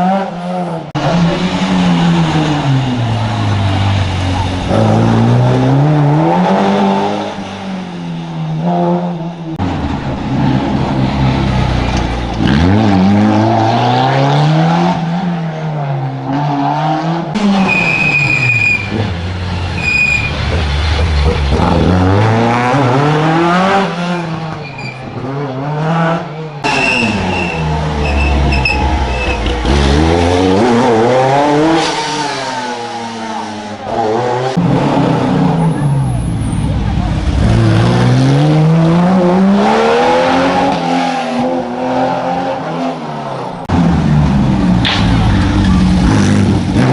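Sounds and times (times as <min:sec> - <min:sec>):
rally car engines revving: 0:00.0 - 0:46.9
tyre squeals: 0:17.6 - 0:19.1, 0:19.8 - 0:20.5, 0:24.6 - 0:25.1, 0:26.7 - 0:29.7.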